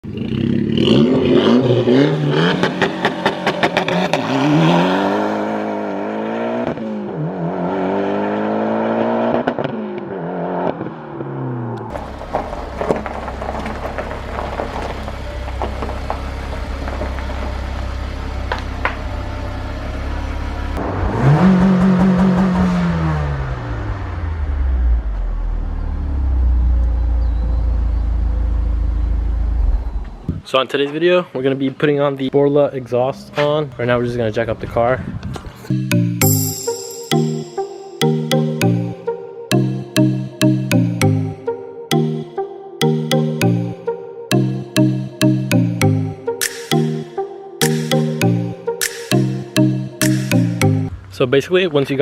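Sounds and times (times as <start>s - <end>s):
car engine revving: 0.1s - 26.8s.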